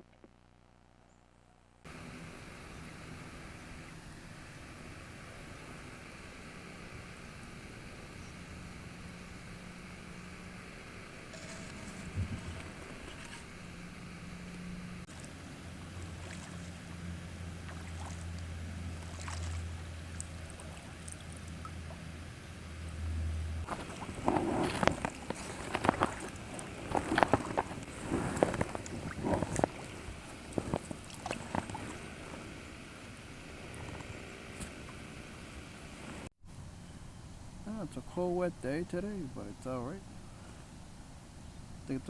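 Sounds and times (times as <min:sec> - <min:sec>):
low steady hum: 0:00.0 - 0:42.0
paddle splashes and knocks: 0:15.1 - 0:16.8, 0:17.6 - 0:18.2, 0:19.0 - 0:19.7, 0:23.6 - 0:32.4.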